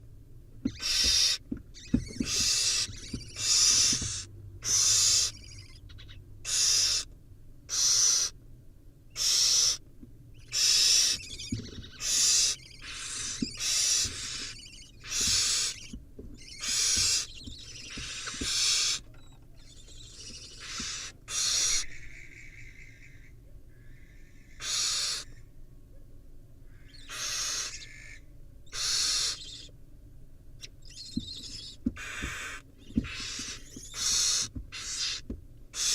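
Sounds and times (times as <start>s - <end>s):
owl nestlings hissing screeches: 0.7s - 5.8s, 6.4s - 7.1s, 7.7s - 8.4s, 9.1s - 9.8s, 10.4s - 19.1s, 19.8s - 23.1s, 24.5s - 25.3s, 27.0s - 29.7s, 30.9s - 35.9s.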